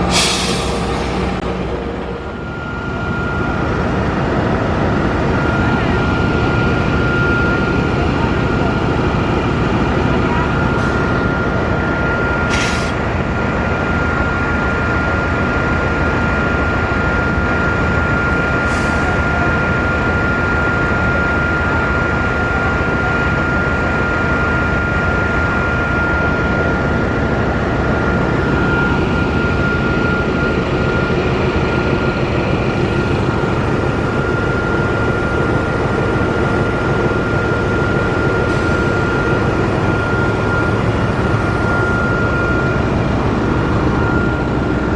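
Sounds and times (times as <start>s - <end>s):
high whine: 0.0s - 8.8s, 23.4s - 44.9s
locomotive diesel engine running: 0.0s - 44.9s.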